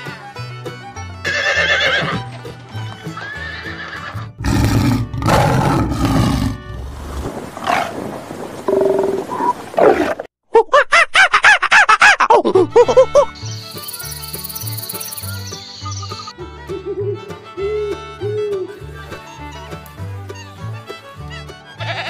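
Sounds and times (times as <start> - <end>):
background music: 0.0 - 6.8, 12.6 - 22.0
horse neighing: 1.2 - 2.2, 3.2 - 6.7.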